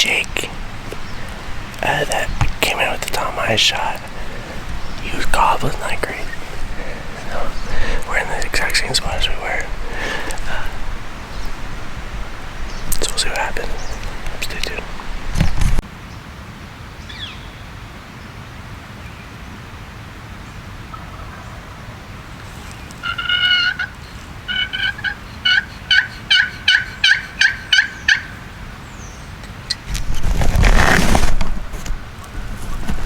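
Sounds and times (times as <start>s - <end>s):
turkey gobbling: 20.9s - 22.0s, 23.0s - 28.4s
turkey yelping: 23.0s - 28.4s
loud rustling: 29.9s - 33.0s.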